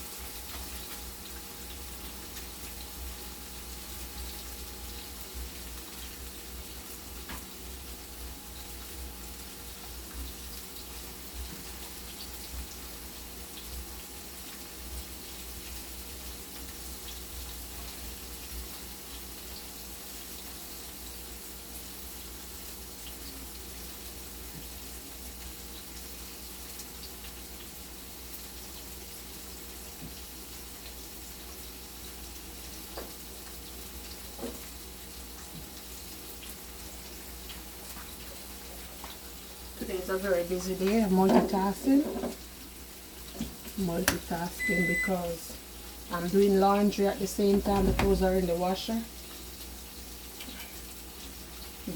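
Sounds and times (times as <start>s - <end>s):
food frying in hot oil: 0.0s - 51.9s.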